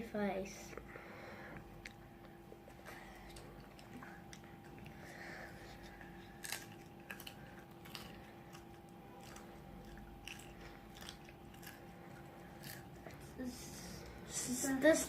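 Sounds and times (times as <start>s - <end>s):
faint steady hum: 0.0s - 15.0s
chewing crunchy food: 1.7s - 13.4s.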